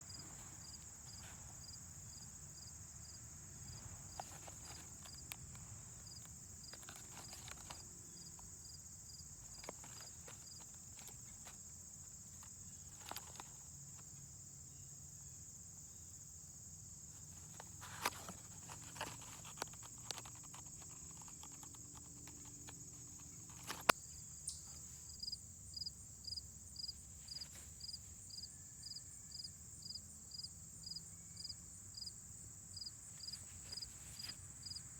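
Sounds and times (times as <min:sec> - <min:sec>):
high insect drone: 0:00.0 - 0:34.9
faint clicks and knocks: 0:03.7 - 0:08.6, 0:09.2 - 0:14.1, 0:17.2 - 0:24.0.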